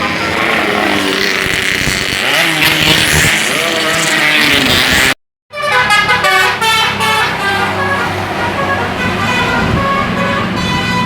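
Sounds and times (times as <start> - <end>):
bus horn playing a multi-tone tune: 0.0 - 1.0, 5.5 - 11.0
traffic: 0.0 - 11.0.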